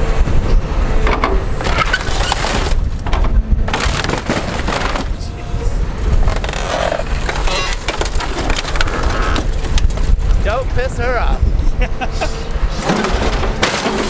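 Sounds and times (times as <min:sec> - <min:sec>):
excavator engine rumbling: 0:00.0 - 0:14.0
sheet metal crunching and creaking: 0:00.8 - 0:11.0, 0:12.7 - 0:14.0
metal cracks and knocks: 0:01.0 - 0:05.4, 0:06.1 - 0:10.2, 0:12.8 - 0:14.0.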